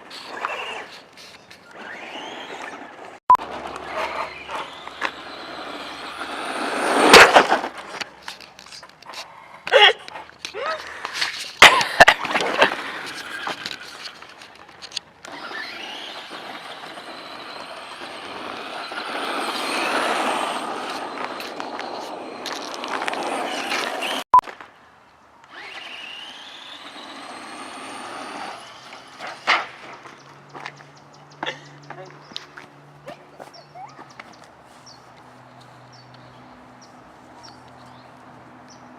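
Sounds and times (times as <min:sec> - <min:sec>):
toy truck motor whine: 0:01.6 - 0:07.1, 0:14.9 - 0:24.3, 0:25.5 - 0:29.5
tyres hissing on pavement: 0:03.8 - 0:09.4, 0:10.8 - 0:24.2, 0:25.6 - 0:30.4.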